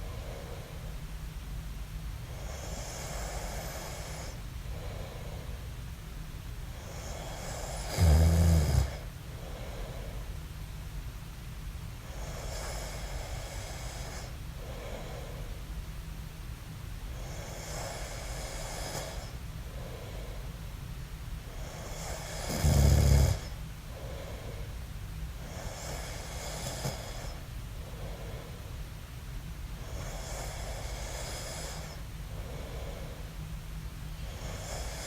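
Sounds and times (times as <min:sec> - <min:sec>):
man snoring: 0:06.9 - 0:09.7, 0:21.6 - 0:23.6, 0:25.7 - 0:27.4.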